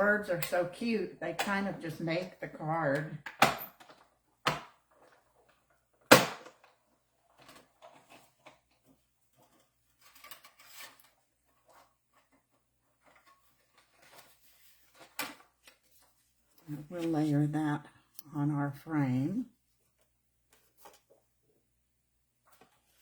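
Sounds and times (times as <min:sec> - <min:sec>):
paper rustling: 0:07.3 - 0:17.4, 0:19.8 - 0:21.3, 0:22.4 - 0:23.0.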